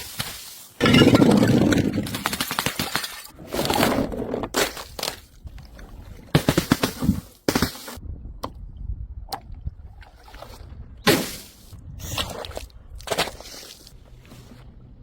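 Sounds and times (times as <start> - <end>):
glass bottles smashing: 0.8 - 3.3.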